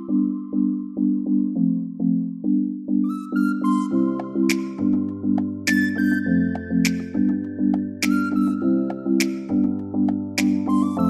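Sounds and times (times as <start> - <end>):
music with low chords: 4.0 - 11.0.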